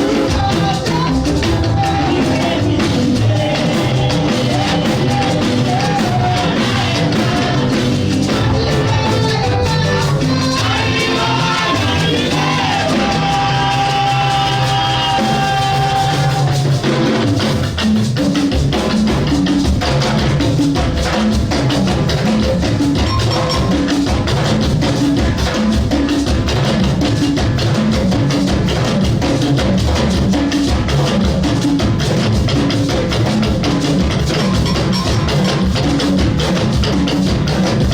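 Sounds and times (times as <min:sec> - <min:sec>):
gospel singing: 0:00.0 - 0:17.3
drum kit drumming: 0:00.0 - 0:37.9
keyboard: 0:00.0 - 0:37.9.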